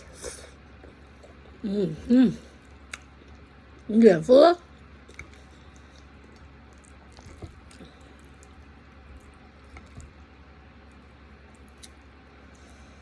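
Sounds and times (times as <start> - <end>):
low steady hum: 0.0 - 13.0
wet eating clicks and smacks: 2.6 - 3.9, 4.6 - 12.7.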